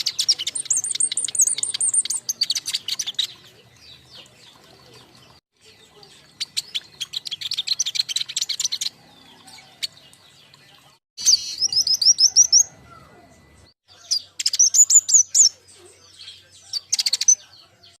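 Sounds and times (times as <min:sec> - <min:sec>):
birds chattering chirps: 0:00.0 - 0:18.0.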